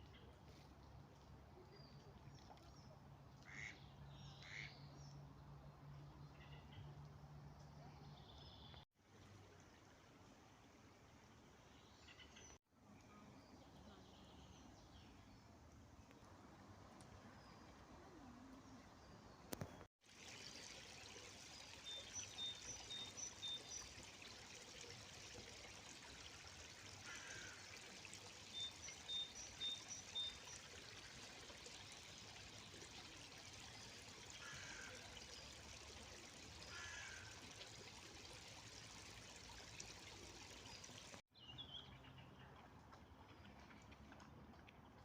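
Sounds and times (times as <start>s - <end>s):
river water flowing: 15.4s - 41.2s.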